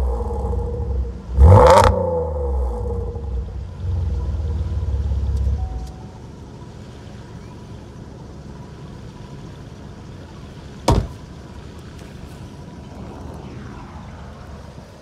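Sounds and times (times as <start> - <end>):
car engine idling: 2.4 - 13.0
loud thump: 10.9 - 11.2.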